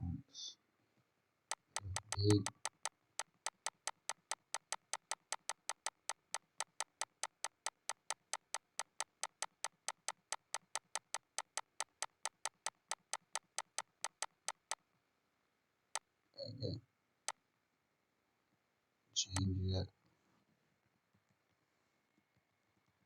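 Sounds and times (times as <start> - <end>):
rapid mouse button clicks: 1.5 - 14.8.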